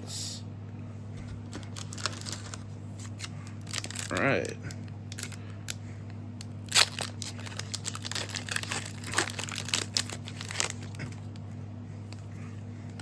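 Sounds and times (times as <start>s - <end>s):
wrapper crinkling and tearing: 1.5s - 5.8s, 6.4s - 11.2s.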